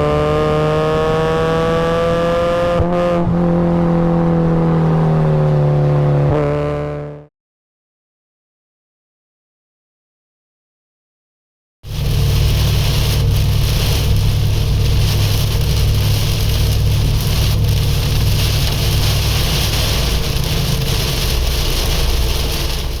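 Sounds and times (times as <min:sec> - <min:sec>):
wind and road noise: 0:00.0 - 0:06.7, 0:11.9 - 0:23.0
car engine running: 0:11.9 - 0:23.0.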